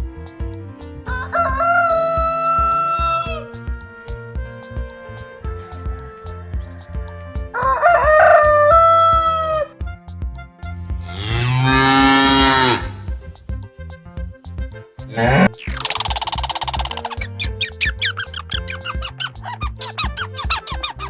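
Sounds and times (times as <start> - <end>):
background music beat: 0.0 - 21.0
rooster crowing: 1.1 - 3.6, 7.5 - 9.7
cow mooing: 11.1 - 13.0, 15.1 - 15.6.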